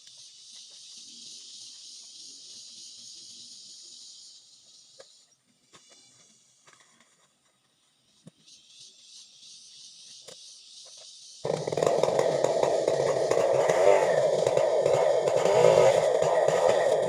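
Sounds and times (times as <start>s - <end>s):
chainsaw running: 11.4s - 17.0s.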